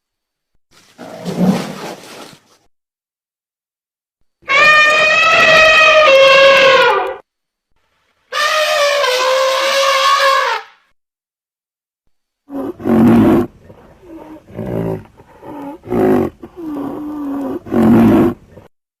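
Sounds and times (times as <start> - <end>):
high creature cry: 4.5 - 7.2.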